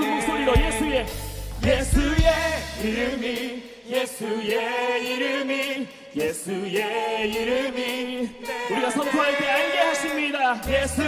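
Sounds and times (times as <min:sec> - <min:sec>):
low drum beats: 0:00.0 - 0:03.6
congregation singing worship song: 0:00.0 - 0:11.0.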